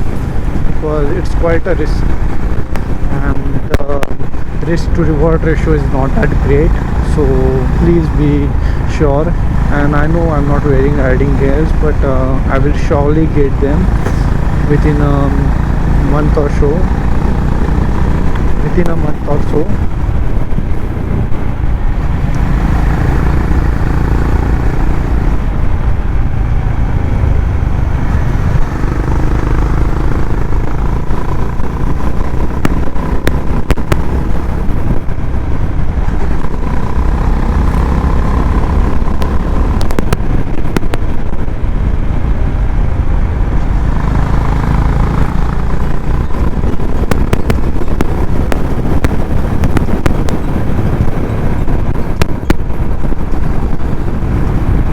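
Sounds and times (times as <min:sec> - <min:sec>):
motorcycle engine running: 0:00.0 - 0:54.9
sharp clicks: 0:37.6 - 0:41.1.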